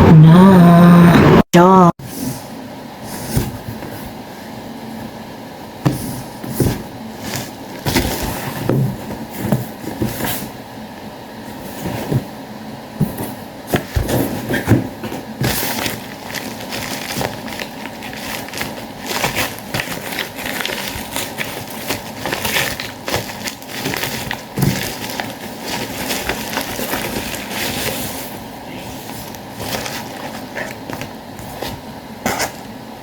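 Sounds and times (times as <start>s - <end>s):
packaging tearing and crinkling: 15.4s - 28.1s, 29.6s - 31.1s.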